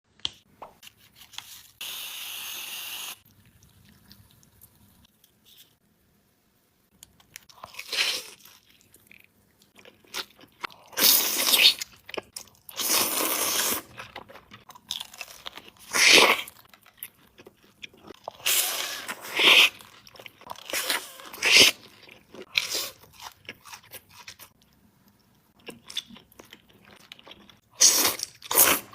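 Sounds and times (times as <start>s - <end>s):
person chewing crunchy food: 7.0s - 28.9s.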